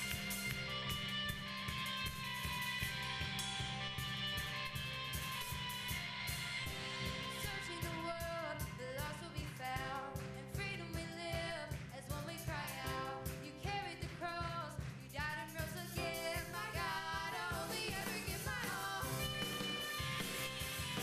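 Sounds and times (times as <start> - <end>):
pop-rock song: 0.0 - 21.0
steady drum beat: 0.0 - 21.0
sung vocals: 7.1 - 21.0.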